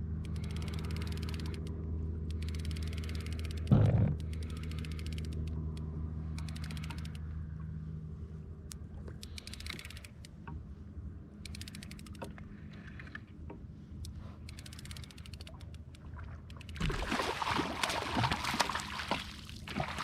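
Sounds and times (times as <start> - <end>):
fishing reel clicking: 0.2 - 1.7, 2.3 - 5.8, 6.4 - 7.3, 9.2 - 10.4, 11.4 - 12.4, 14.0 - 16.8
fish splashing at water surface: 16.7 - 20.0.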